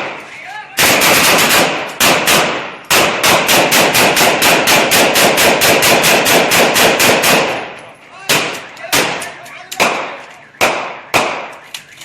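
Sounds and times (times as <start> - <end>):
automatic gunfire: 0.8 - 7.7.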